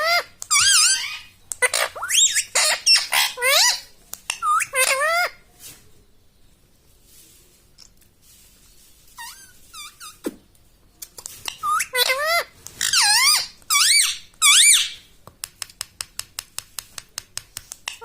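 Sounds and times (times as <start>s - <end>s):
parakeet screeching calls: 0.0s - 5.4s, 9.2s - 10.2s, 11.5s - 15.0s.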